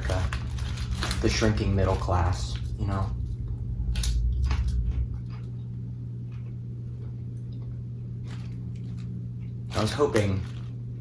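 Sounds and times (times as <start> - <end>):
low rumble: 0.0 - 9.7
low electrical hum: 0.0 - 11.0
person chewing potato chips: 2.5 - 10.8.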